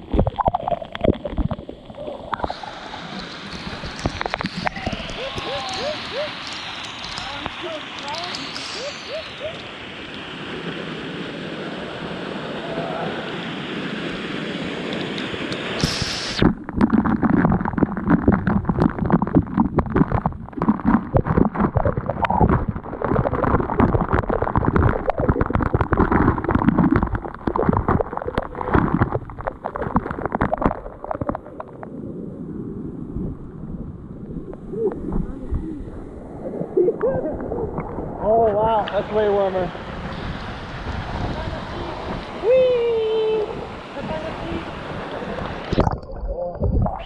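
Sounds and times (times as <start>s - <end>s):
underwater bubbling and churning: 0.0s - 47.0s
waterfall rushing: 2.2s - 17.7s, 37.6s - 45.9s.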